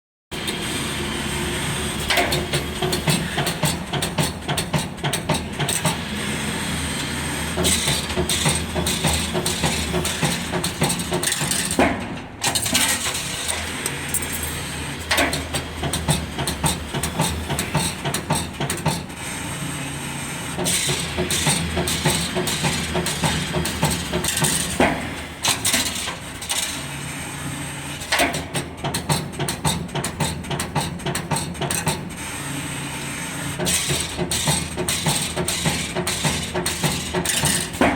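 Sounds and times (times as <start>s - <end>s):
steady motor hum: 0.4s - 28.4s.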